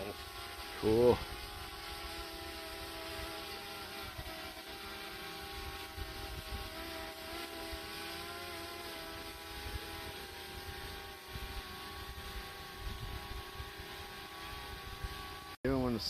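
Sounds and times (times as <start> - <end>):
drone propellers buzzing: 0.0 - 15.6
wind on microphone: 9.5 - 14.0.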